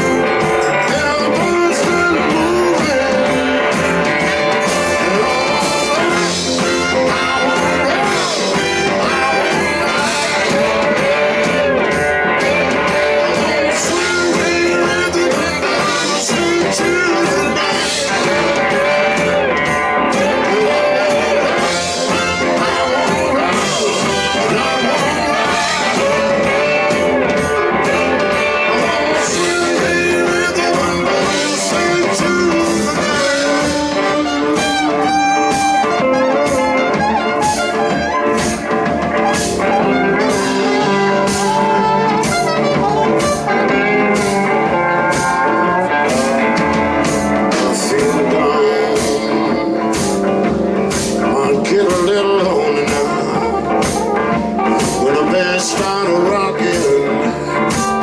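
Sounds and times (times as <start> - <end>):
blues-rock band playing: 0.0 - 58.0
person singing: 0.0 - 58.0.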